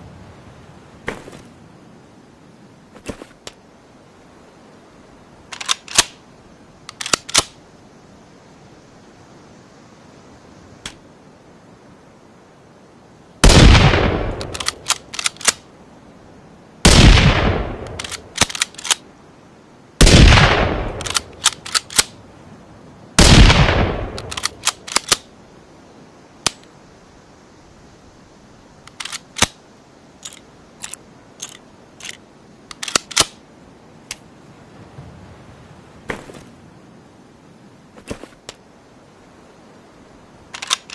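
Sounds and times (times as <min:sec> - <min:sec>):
rifle gunshots with echo: 0:13.4 - 0:14.6, 0:16.9 - 0:18.1, 0:20.0 - 0:21.3, 0:23.2 - 0:24.6.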